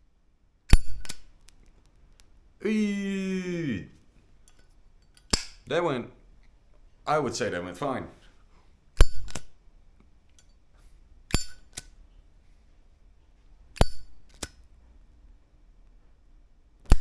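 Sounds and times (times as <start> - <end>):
lighter lid clicking open and shut: 0.7 - 1.3, 5.3 - 5.6, 11.3 - 12.0, 13.8 - 14.6.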